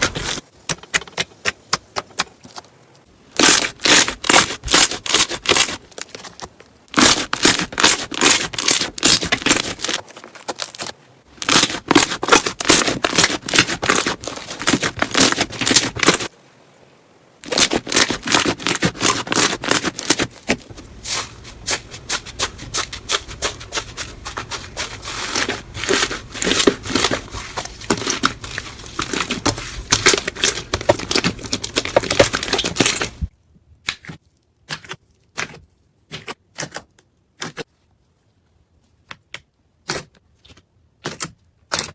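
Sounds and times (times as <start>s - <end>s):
slime crackling and popping: 7.0s - 16.3s, 24.4s - 33.3s.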